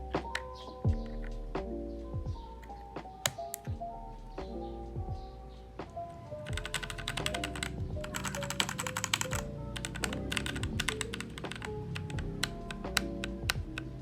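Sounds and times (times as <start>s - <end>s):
background music: 0.0s - 14.0s
mechanical keyboard clacking: 2.6s - 3.7s, 6.4s - 14.0s.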